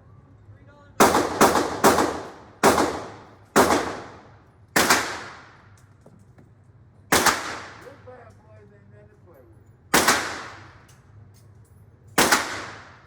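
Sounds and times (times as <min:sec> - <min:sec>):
gunshots echoing indoors: 0:01.0 - 0:05.6, 0:07.1 - 0:07.9, 0:09.9 - 0:10.8, 0:12.2 - 0:13.0.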